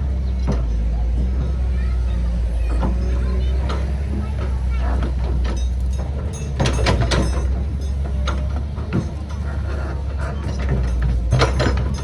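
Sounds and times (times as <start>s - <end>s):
diesel engine droning: 0.0s - 12.0s.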